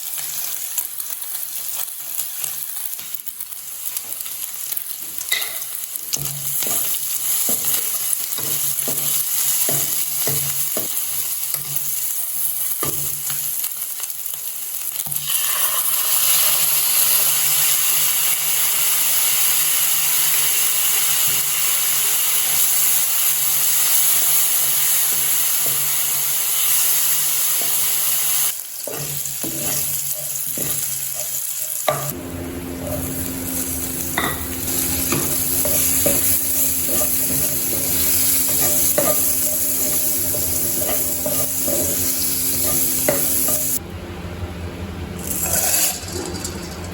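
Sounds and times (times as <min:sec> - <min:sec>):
food sizzling in a pan: 0:00.0 - 0:43.8
low steady hum: 0:32.0 - 0:46.9
utensil scraping a pan: 0:34.2 - 0:43.8.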